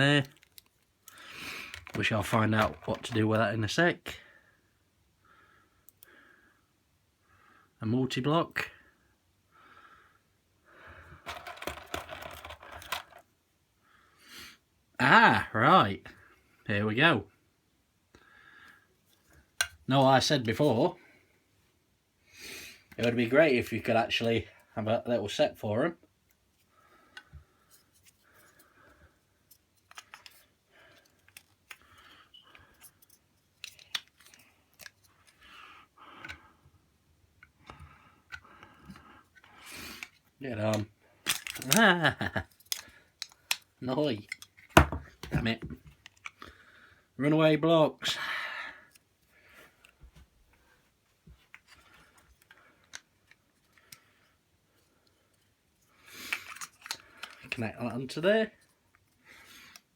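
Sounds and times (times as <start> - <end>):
plastic toy pieces clicking: 11.3 - 13.2, 41.3 - 44.6
packaging rustling: 41.3 - 46.3.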